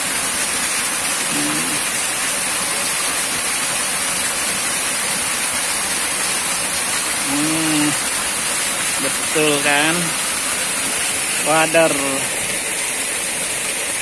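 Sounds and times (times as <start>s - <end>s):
river water rushing: 0.0s - 14.0s.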